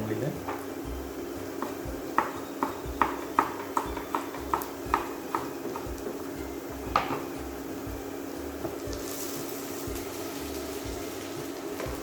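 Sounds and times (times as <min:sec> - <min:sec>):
knife chopping vegetables: 0:01.6 - 0:06.2.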